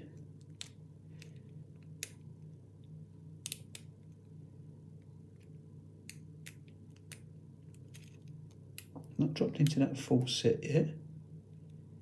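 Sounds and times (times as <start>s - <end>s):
lock pick clicking in a lock: 3.4s - 3.9s.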